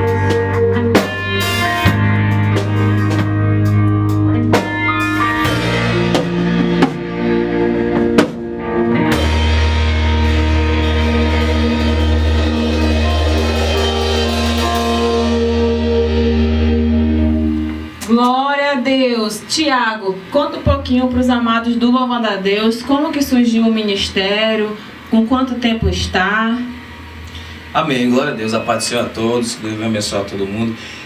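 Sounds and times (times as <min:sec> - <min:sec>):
live band music: 0:00.0 - 0:18.1
deep sustained bass note: 0:01.9 - 0:17.9
sharp drum hits: 0:04.6 - 0:15.6.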